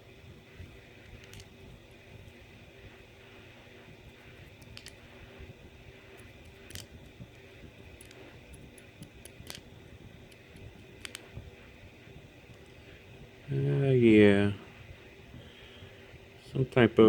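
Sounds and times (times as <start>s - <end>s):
steady low hum: 0.0s - 17.0s
small metal parts clicking: 4.6s - 5.0s, 6.4s - 6.9s.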